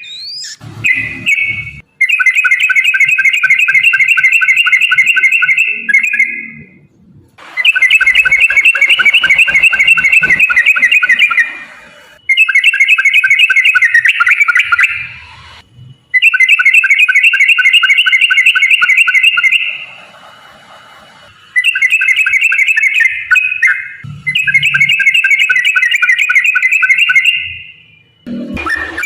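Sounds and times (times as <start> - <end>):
bird singing rapid trill: 7.6 - 11.6, 12.2 - 15.2, 21.6 - 27.8.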